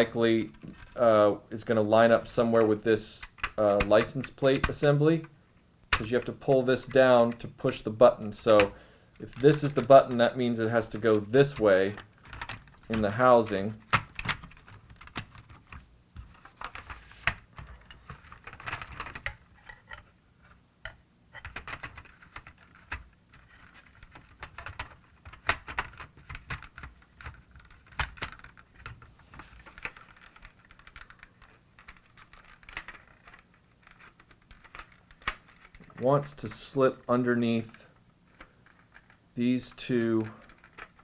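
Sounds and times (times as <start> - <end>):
plastic toy parts clicking: 29.6 - 36.0, 38.4 - 41.0.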